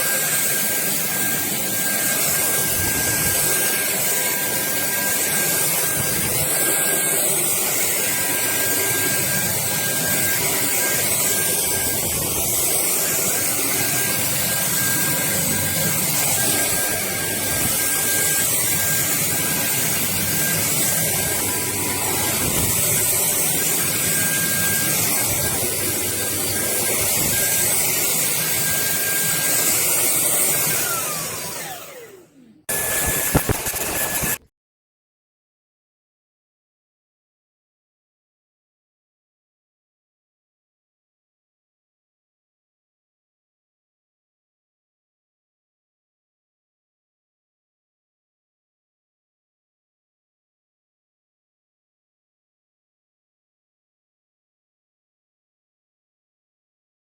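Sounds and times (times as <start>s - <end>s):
stick vacuum running: 0.0s - 34.5s.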